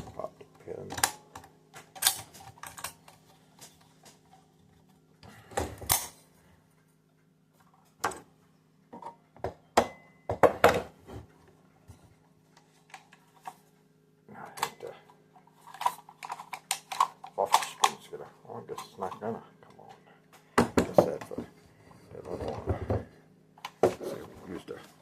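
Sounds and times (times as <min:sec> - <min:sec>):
plastic and metal parts clattering: 0:00.0 - 0:06.3, 0:14.5 - 0:19.4
faint steady hum: 0:00.0 - 0:25.0.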